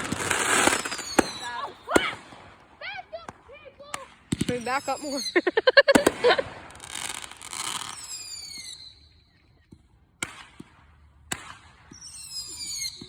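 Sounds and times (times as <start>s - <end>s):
high firework whistle: 0.0s - 2.4s, 4.6s - 9.4s, 11.9s - 13.0s
small firework pops: 0.0s - 5.2s, 5.9s - 9.0s, 9.6s - 13.0s
fireworks bangs: 0.0s - 9.0s, 9.7s - 13.0s
fireworks hissing and crackling: 0.0s - 9.0s, 10.2s - 13.0s.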